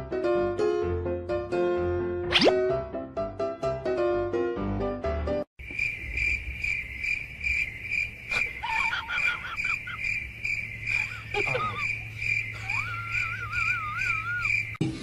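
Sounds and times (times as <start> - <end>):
cricket chirping: 5.6 - 14.8
wavering high-pitched calls: 10.9 - 14.8.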